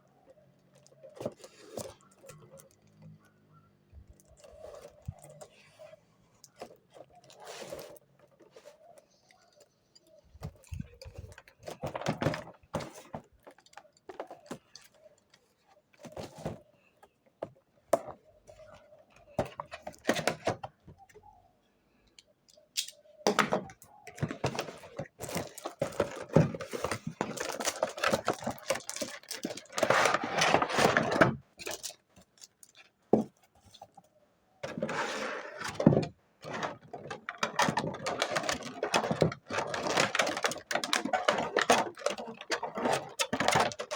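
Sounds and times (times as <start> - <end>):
packaging crinkling and rustling: 4.1 - 15.1, 24.0 - 32.8, 34.6 - 43.9
packaging clicks and knocks: 9.6 - 15.1, 22.8 - 32.5, 35.6 - 43.9.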